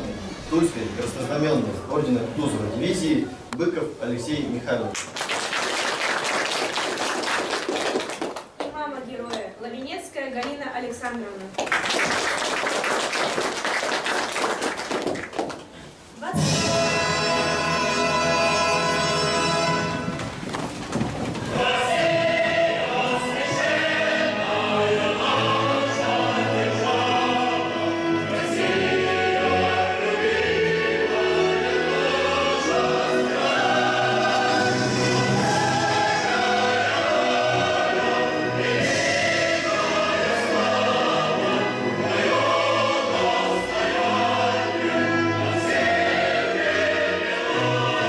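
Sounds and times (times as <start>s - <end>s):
choir singing with orchestra: 16.4s - 20.4s, 21.4s - 48.0s.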